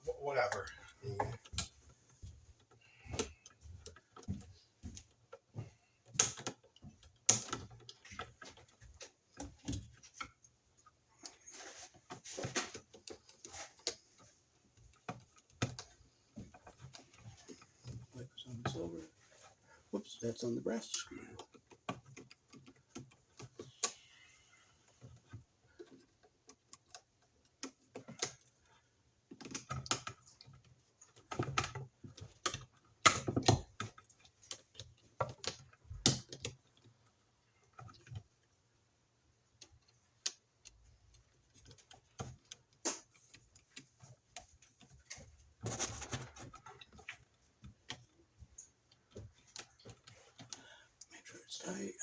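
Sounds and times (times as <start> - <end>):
stiff wires being bent: 6.0 - 10.4.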